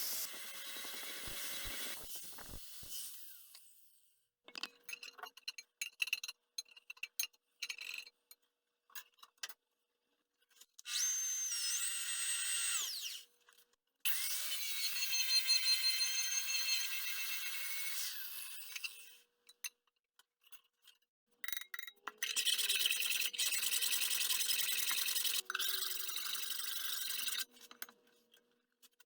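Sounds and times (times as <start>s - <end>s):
power sander motor whine: 0.0s - 3.5s.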